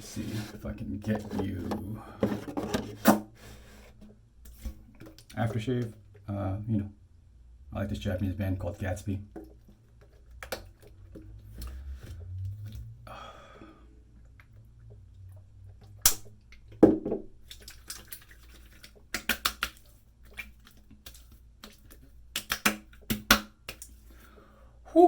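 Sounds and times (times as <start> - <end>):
hands patting face: 21.0 - 23.9.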